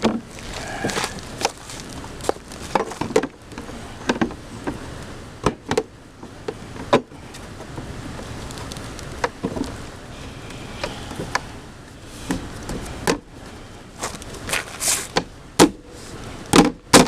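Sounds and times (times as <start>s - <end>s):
metal fender knocks and clunks: 0.0s - 0.3s, 2.3s - 4.8s.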